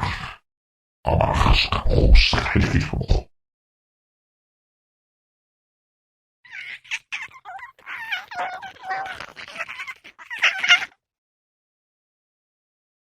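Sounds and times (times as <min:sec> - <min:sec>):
creature voice chattering: 0:01.1 - 0:03.3, 0:06.5 - 0:11.0.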